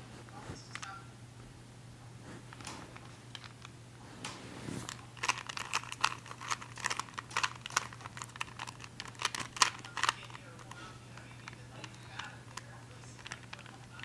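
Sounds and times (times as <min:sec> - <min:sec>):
plastic puzzle cube clicking: 0:04.9 - 0:14.0.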